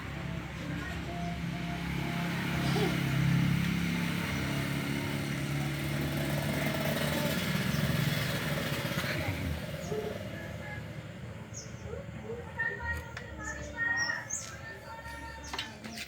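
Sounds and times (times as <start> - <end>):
motorcycle engine running: 0.0 - 11.9.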